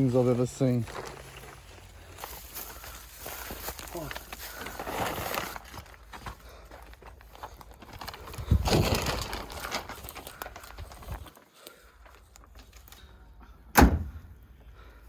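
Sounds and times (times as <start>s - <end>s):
rustling handling noise: 0.0s - 13.1s
sharp thump: 13.7s - 14.2s.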